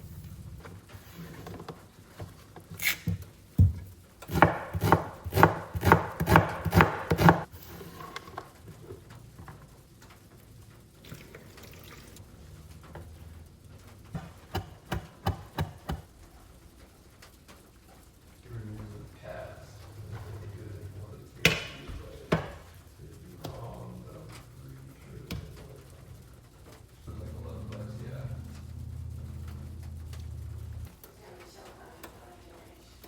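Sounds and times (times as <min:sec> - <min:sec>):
knife chopping on cutting board: 0:03.0 - 0:07.5, 0:14.2 - 0:16.0, 0:21.5 - 0:22.6.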